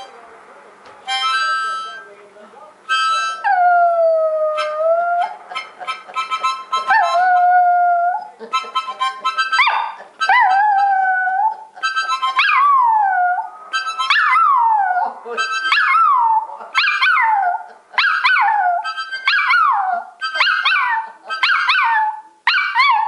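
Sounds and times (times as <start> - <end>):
harmonica chords: 1.1 - 2.2, 2.9 - 3.5, 4.5 - 7.7, 8.4 - 12.8, 13.5 - 17.0, 17.8 - 21.8
dog howling: 3.4 - 5.4, 6.9 - 8.3, 9.5 - 11.7, 12.4 - 23.0.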